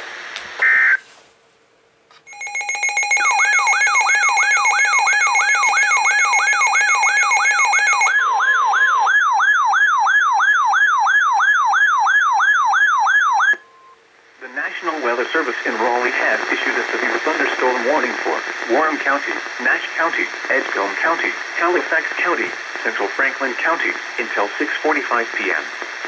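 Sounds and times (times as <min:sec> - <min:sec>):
electronic alert siren whooping: 0:02.3 - 0:13.8.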